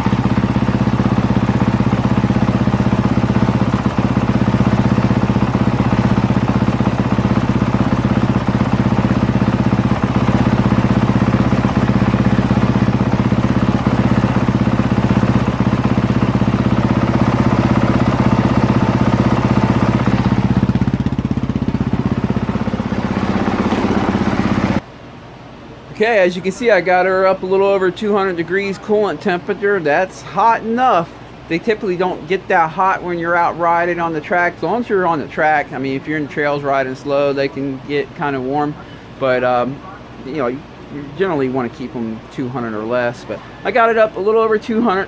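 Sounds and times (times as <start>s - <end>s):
motorcycle engine idling: 0.0s - 24.8s.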